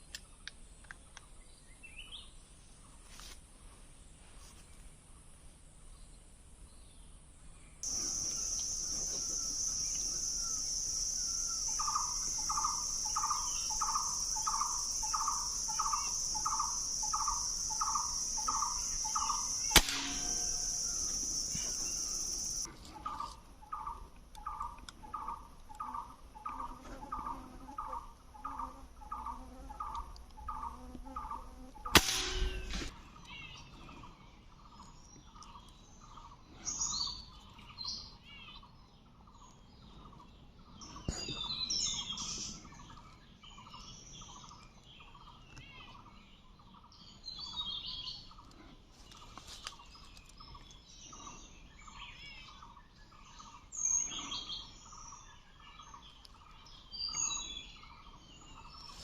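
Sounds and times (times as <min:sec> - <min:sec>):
high-pitched insect drone: 0:07.8 - 0:22.7
bird calling: 0:07.8 - 0:33.6
sharp gunshots: 0:19.6 - 0:21.0, 0:31.9 - 0:32.9.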